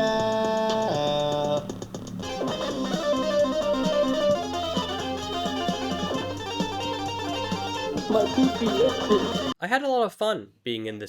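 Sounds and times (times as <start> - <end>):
plucked guitar notes: 2.2 - 9.6.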